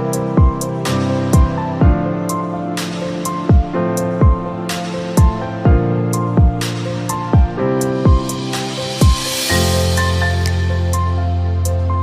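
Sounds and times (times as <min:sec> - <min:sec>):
electronic kick drum: 0:00.1 - 0:02.3, 0:03.4 - 0:10.3.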